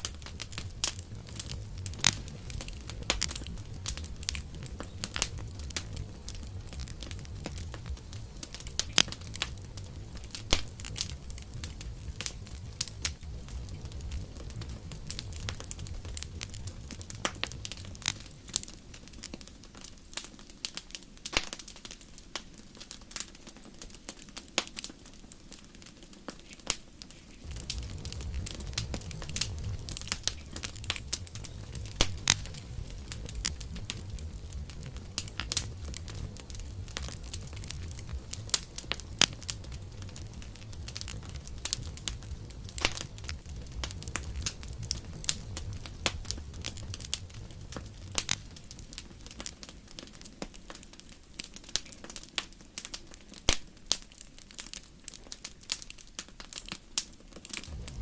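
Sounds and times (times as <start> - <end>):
low rumble: 0.0 - 19.1, 27.4 - 49.6, 57.6 - 58.0
wood fire crackling and popping: 0.0 - 58.0.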